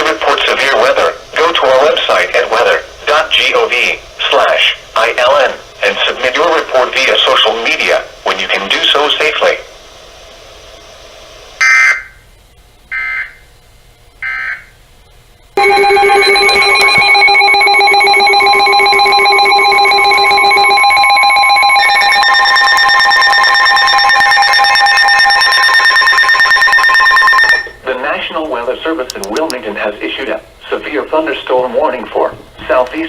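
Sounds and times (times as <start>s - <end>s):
digital data tone bursts: 15.6s - 27.8s
pulsing multi-tone alert alarm: 15.6s - 27.8s.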